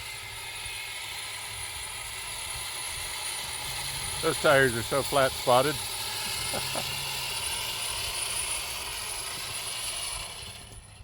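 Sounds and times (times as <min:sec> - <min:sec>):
rc truck gear whirr and whine: 0:00.0 - 0:11.0.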